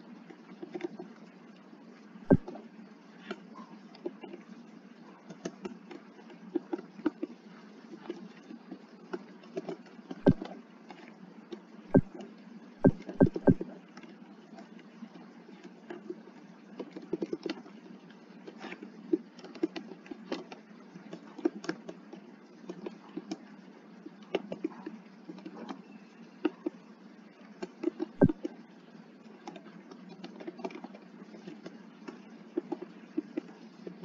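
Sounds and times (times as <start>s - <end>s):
keyboard typing: 9.6s - 10.5s, 12.8s - 13.6s, 27.6s - 28.5s.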